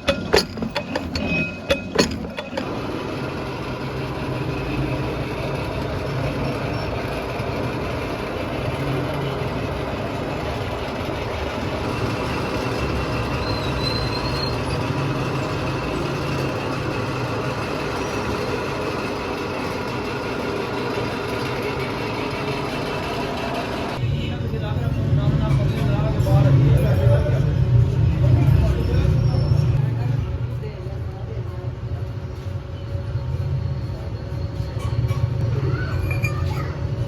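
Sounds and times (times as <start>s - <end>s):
sharp metal knocks: 0.0s - 2.7s.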